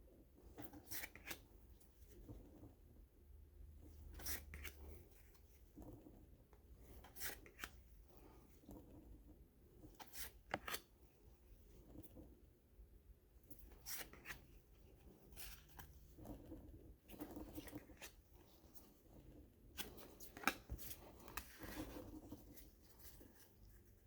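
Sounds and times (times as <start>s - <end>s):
cards being shuffled: 0.6s - 1.4s, 4.1s - 6.0s, 6.8s - 8.4s, 10.0s - 10.9s, 13.6s - 14.6s, 15.3s - 19.0s, 19.7s - 24.0s.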